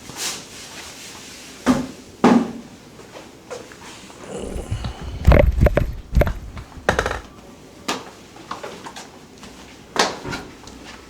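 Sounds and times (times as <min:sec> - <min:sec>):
low rumbling handling noise: 0:04.4 - 0:07.3
thumps and sharp knocks: 0:04.4 - 0:07.3.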